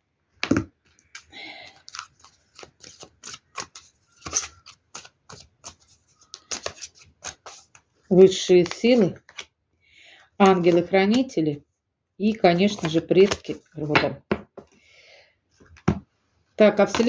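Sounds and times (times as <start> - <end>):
cards being shuffled: 0.4 - 9.5, 10.4 - 11.4, 12.3 - 14.1.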